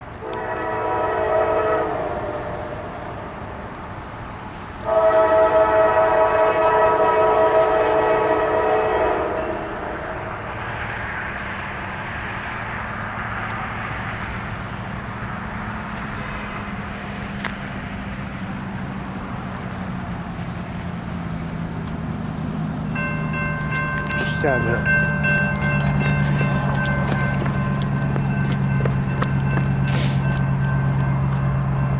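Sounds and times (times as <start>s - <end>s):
diesel engines rumbling: 0.0s - 31.9s
train running gear rumble: 0.0s - 31.9s
locomotive air horn chord: 0.2s - 3.6s, 4.8s - 10.5s.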